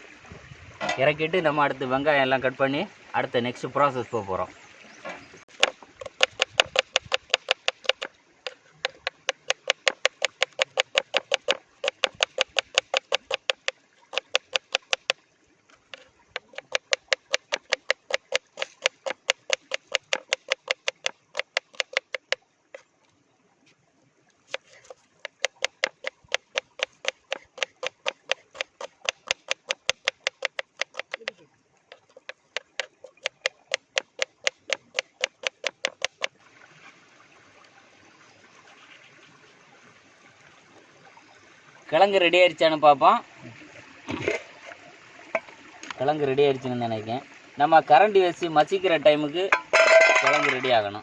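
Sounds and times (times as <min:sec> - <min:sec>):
knife chopping on cutting board: 0:05.5 - 0:08.1, 0:08.8 - 0:15.1, 0:16.4 - 0:22.4, 0:24.5 - 0:31.3, 0:31.9 - 0:36.3.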